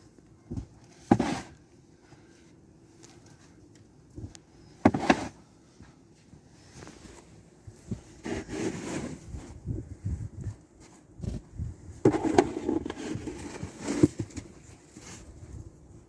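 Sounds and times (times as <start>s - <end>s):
crunching scrapes in wet snow: 8.2s - 9.3s.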